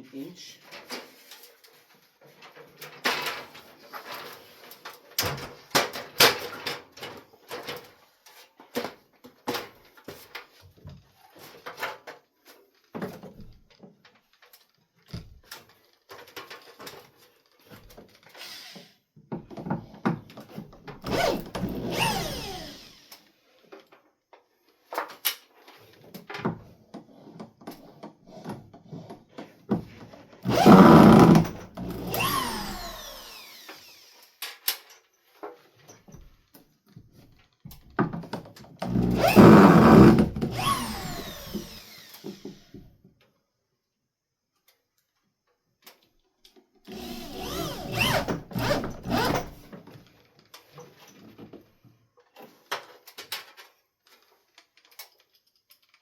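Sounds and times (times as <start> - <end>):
power drill running: 21.1 - 23.1, 30.5 - 34.2, 38.8 - 42.7, 46.9 - 49.6.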